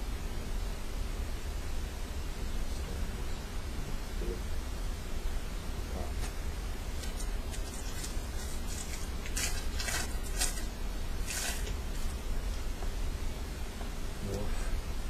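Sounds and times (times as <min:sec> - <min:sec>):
steady low hum: 0:00.0 - 0:15.0
trading cards rustling: 0:06.2 - 0:12.2.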